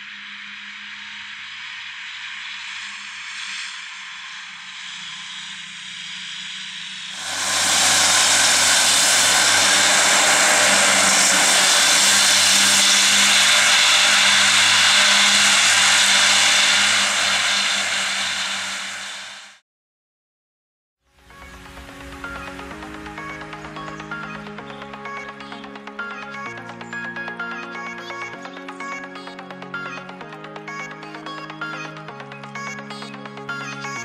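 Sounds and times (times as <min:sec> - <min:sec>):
dense rushing whir: 0:06.6 - 0:19.6
mowers cutting grass: 0:07.2 - 0:19.4
tractor diesel engine running: 0:07.2 - 0:19.4.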